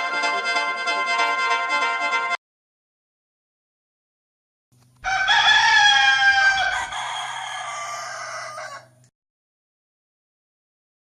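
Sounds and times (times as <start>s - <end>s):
rooster crowing: 5.0s - 9.1s.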